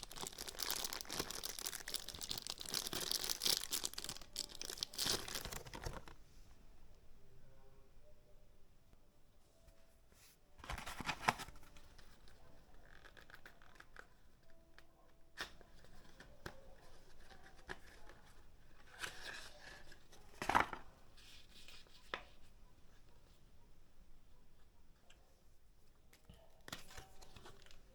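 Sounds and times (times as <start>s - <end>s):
packaging rustling and tearing: 0.0s - 6.2s.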